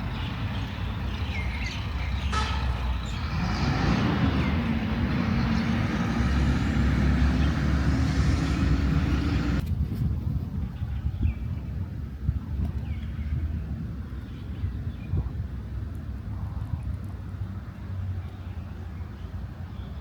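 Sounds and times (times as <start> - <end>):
low traffic rumble: 0.0 - 20.0
vehicle engine running: 3.3 - 9.6.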